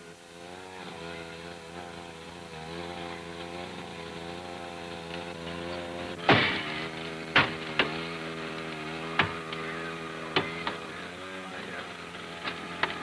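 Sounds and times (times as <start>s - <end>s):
small engine running: 0.0s - 13.0s.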